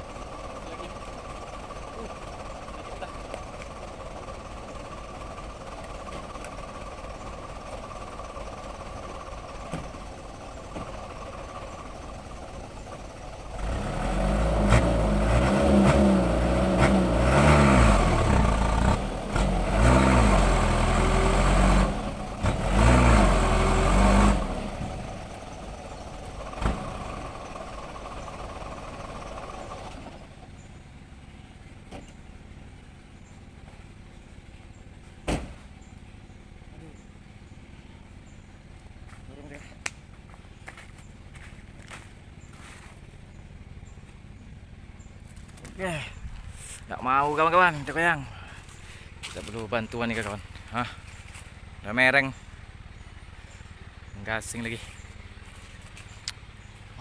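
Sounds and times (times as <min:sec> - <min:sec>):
vehicle engine idling and revving: 0:00.0 - 0:57.0.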